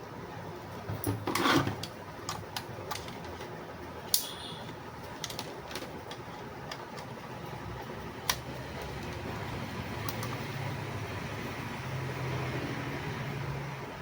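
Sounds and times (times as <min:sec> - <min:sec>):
handling clicks and knocks: 0:00.9 - 0:07.2.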